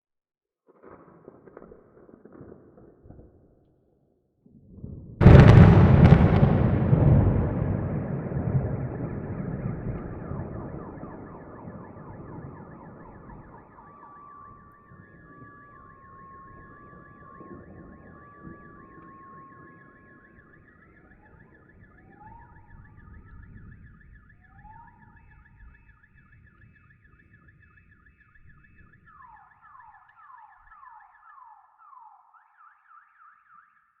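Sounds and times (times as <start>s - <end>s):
thunder rumbling: 4.7s - 25.7s
car alarms: 5.2s - 34.0s.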